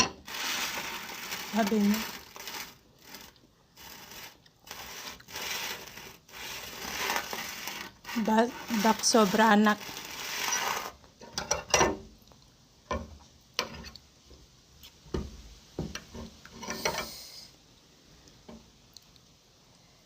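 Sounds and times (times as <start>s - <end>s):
slurping: 0.3s - 11.0s.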